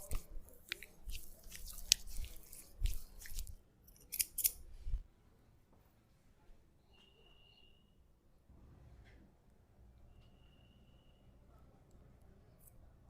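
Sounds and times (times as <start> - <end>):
blade snipping hair: 0.0 - 4.7.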